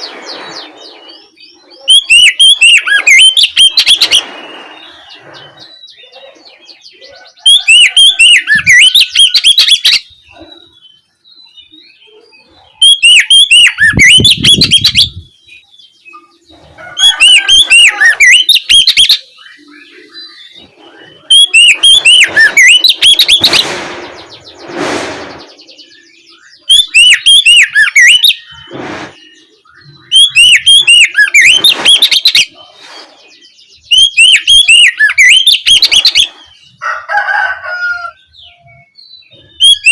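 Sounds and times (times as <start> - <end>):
bird singing whistled phrases: 0.6 - 6.1, 6.8 - 12.1, 12.7 - 16.3, 17.0 - 23.6, 25.5 - 32.6, 33.4 - 36.4, 38.6 - 39.9
brief rushing noise: 23.3 - 25.7, 28.5 - 29.3.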